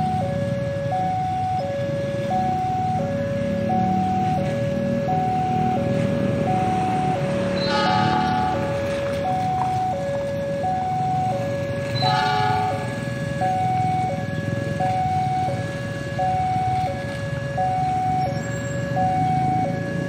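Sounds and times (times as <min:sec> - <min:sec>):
alternating electronic warning tones: 0:00.0 - 0:20.0
bright ringing note: 0:07.6 - 0:08.8.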